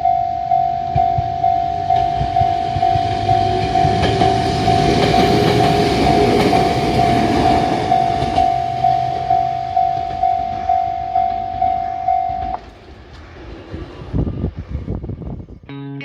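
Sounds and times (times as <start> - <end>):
level-crossing bell ringing: 0.0 - 12.6
train rumble and wheel clacks: 0.0 - 15.5.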